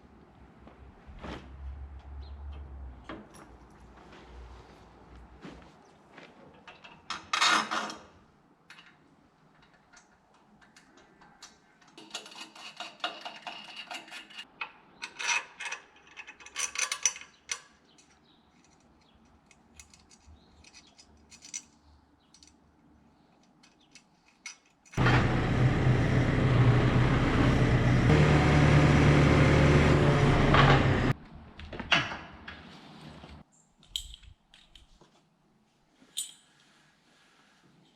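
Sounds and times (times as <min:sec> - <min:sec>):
small petrol engine running: 0:25.0 - 0:31.2.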